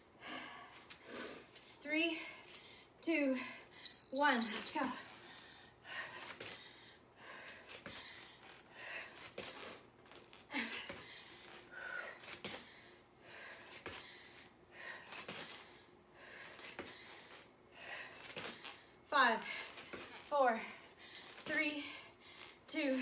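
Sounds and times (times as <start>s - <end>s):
woman breathing hard: 0.1s - 3.9s, 5.0s - 23.0s.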